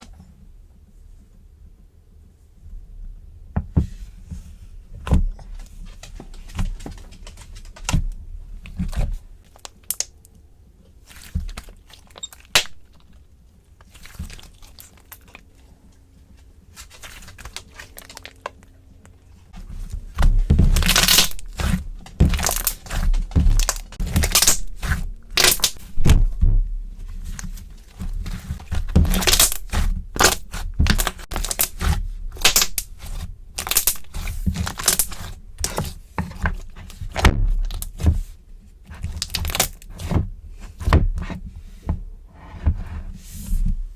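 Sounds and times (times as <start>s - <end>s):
slime popping and crackling: 20.6s - 26.4s, 28.4s - 35.8s.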